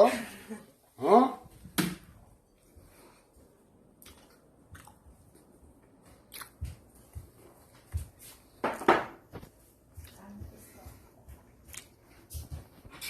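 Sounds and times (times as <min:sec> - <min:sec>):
chewing and mouth sounds: 0:03.9 - 0:07.4, 0:11.6 - 0:12.1.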